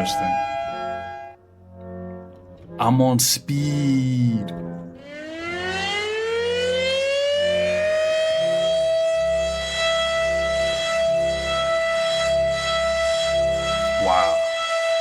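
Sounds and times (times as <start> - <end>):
siren winding up: 0.0 - 1.4, 5.0 - 15.0.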